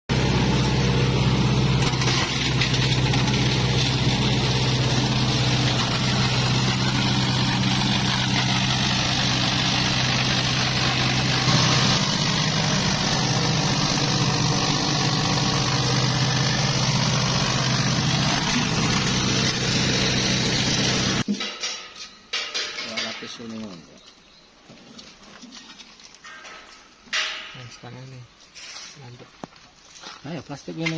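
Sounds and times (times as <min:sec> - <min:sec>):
plastic shredder grinding: 0:00.1 - 0:21.3.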